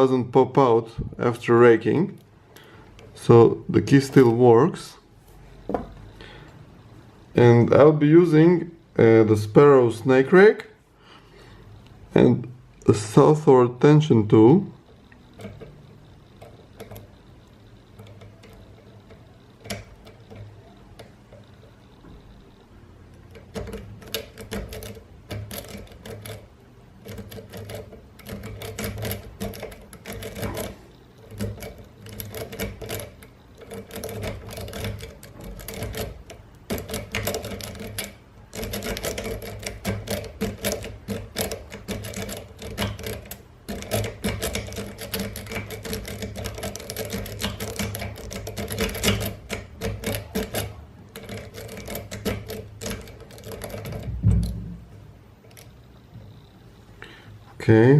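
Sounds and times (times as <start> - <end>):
lock pick clicking and scraping: 17.9 - 22.2, 23.0 - 56.5.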